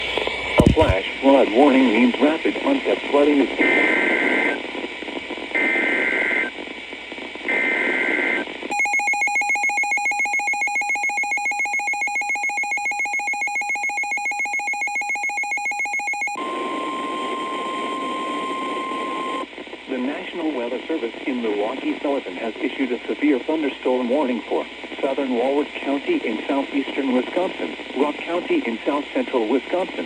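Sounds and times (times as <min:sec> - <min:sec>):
radio hiss: 0:00.0 - 0:08.7, 0:16.4 - 0:30.0
steady warning alarm tone: 0:08.7 - 0:19.4.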